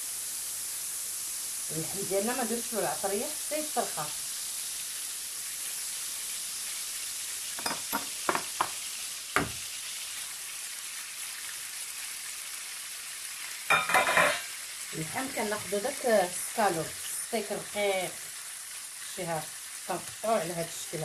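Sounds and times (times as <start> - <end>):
butter sizzling in a frying pan: 0.0 - 21.0
utensil knocks: 7.6 - 8.8, 9.4 - 9.6.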